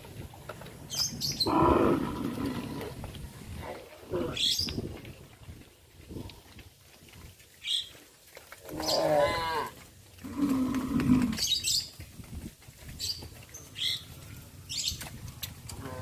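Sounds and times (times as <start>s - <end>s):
cattle mooing: 8.7s - 11.4s.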